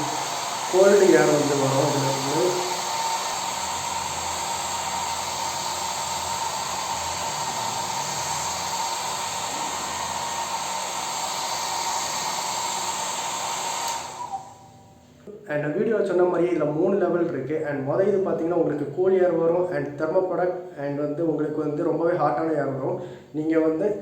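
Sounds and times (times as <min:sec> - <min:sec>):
hair dryer running: 0:00.0 - 0:14.8.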